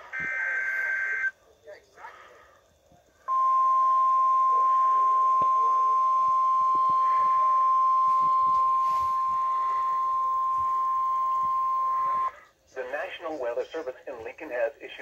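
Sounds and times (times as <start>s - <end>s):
steady alarm beep: 0.0s - 1.4s, 3.3s - 12.4s
faint radio static: 0.0s - 15.0s.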